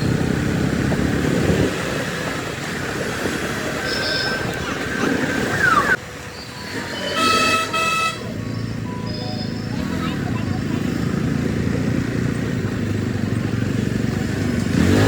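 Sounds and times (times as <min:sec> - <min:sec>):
road traffic rumble: 0:00.0 - 0:15.0
vehicle horn: 0:06.6 - 0:10.0.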